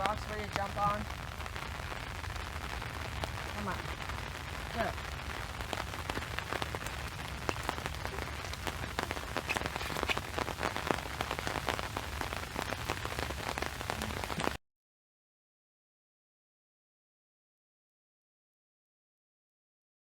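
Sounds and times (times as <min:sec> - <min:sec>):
heavy rain falling: 0:00.0 - 0:14.6
raindrops ticking close by: 0:00.0 - 0:14.6.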